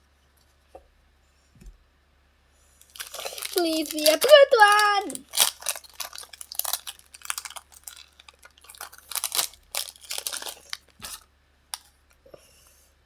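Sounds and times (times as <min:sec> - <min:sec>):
foil wrapper crinkling and tearing: 0:02.8 - 0:12.0.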